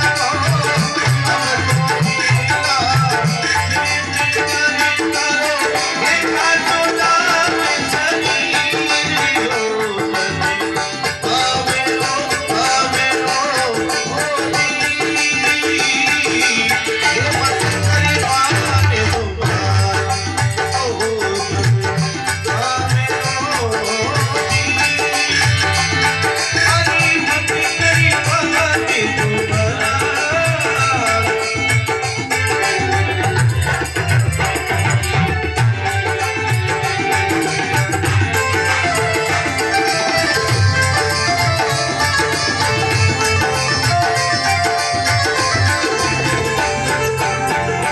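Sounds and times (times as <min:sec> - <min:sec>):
hand percussion rhythm: 0:00.0 - 0:47.9
wavering melody line: 0:30.6 - 0:47.9.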